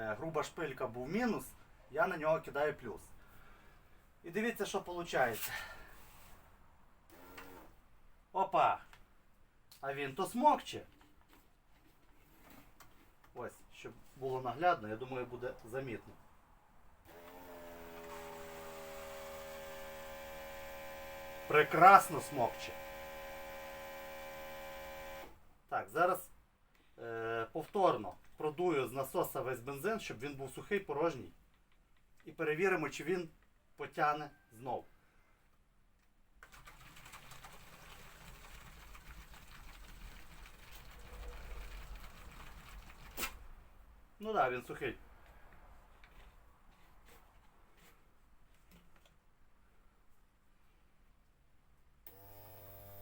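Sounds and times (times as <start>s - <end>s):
electric fuel pump humming: 17.1s - 25.4s, 52.1s - 53.0s.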